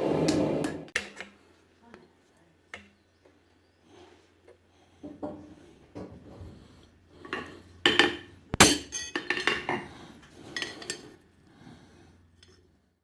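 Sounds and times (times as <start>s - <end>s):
metal tools clanking: 8.6s - 9.8s.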